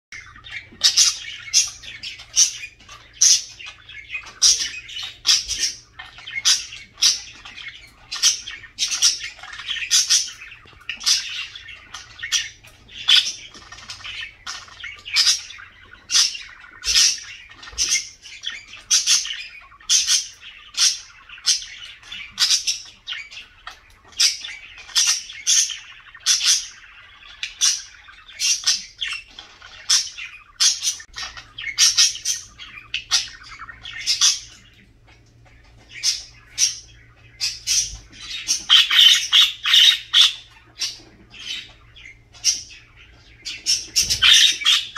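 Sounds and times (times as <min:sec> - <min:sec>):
budgerigar chirping and warbling: 0:00.2 - 0:44.9.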